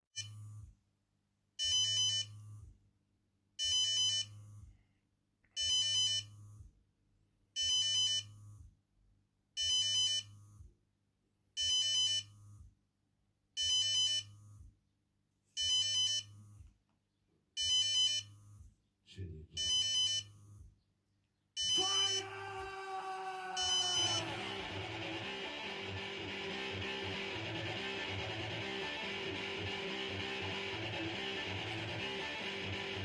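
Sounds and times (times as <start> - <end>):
electronic alarm beeping: 19.6 - 20.3, 21.6 - 22.3, 23.6 - 24.3.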